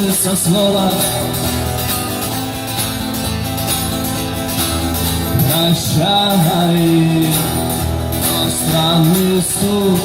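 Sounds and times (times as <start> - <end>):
guitar music: 0.0 - 10.0.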